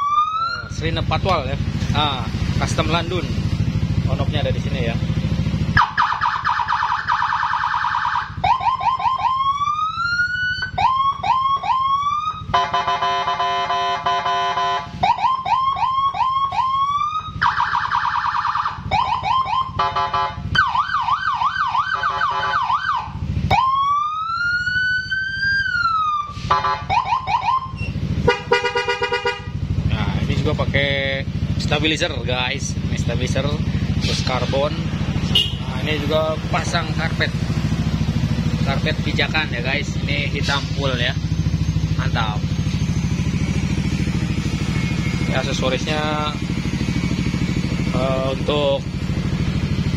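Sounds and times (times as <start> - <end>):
electronic siren cycling tones: 0.0 - 0.8, 5.7 - 28.1, 40.9 - 48.0.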